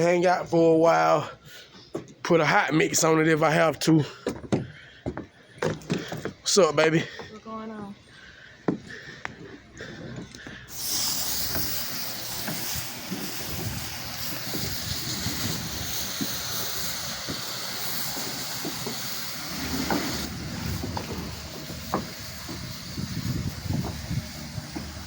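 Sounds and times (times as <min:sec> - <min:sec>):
spray nozzle hissing: 0:10.7 - 0:25.0.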